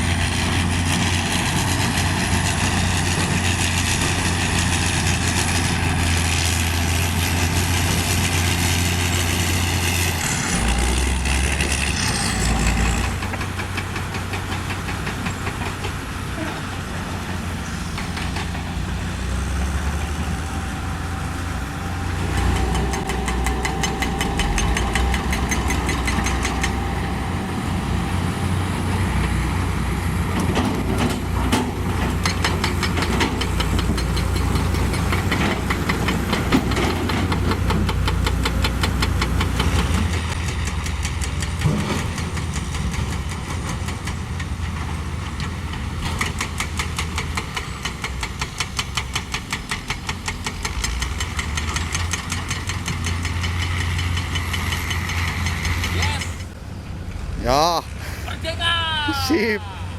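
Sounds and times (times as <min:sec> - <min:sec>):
heavy machinery diesel engines: 0:00.0 - 0:59.9.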